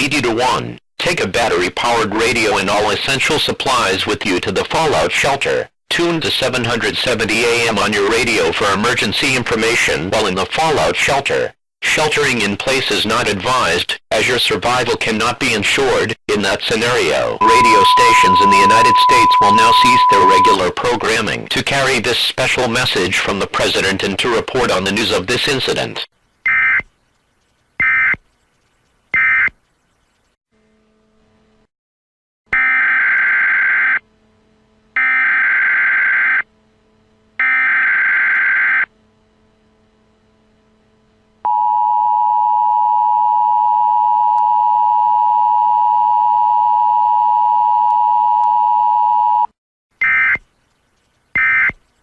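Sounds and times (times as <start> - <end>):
two-tone attention signal: 17.4 - 20.7.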